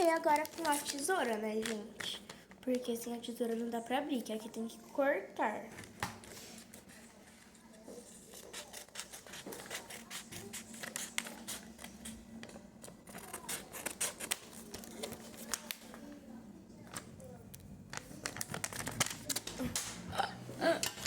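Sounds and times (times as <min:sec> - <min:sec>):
package crinkling: 0:00.0 - 0:02.4.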